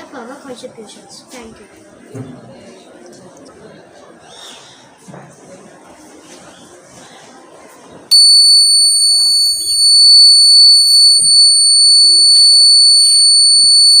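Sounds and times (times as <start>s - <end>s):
high-pitched alarm buzzer tone: 8.1s - 14.0s.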